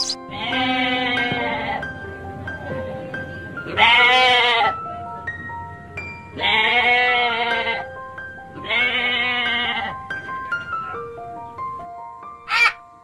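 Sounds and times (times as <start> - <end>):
animal bleating: 0.0 - 1.8, 6.4 - 7.8, 8.6 - 9.9
light keyboard music: 0.0 - 3.9, 7.2 - 13.0.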